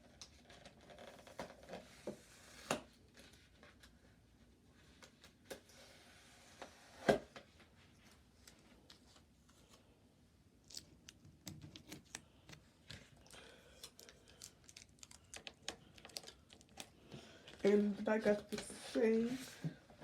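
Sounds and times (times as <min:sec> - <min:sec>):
packaging rustling: 0:10.6 - 0:18.4.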